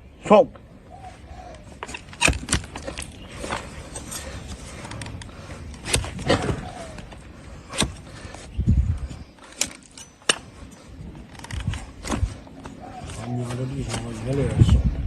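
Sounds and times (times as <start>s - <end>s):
knife cracking and scraping hoof: 1.5s - 8.5s, 9.4s - 14.2s.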